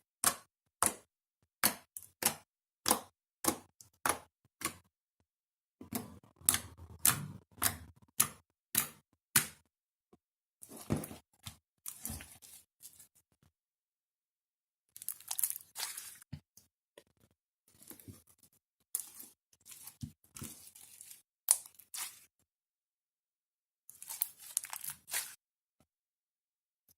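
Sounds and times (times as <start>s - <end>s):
slime crackling squish: 14.9s - 16.2s, 24.0s - 25.4s.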